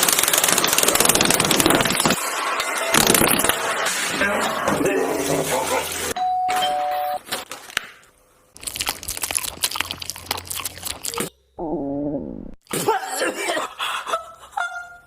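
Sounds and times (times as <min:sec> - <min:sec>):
dense crackling noise: 0:00.0 - 0:02.2
doorbell ding-dong: 0:06.2 - 0:07.2.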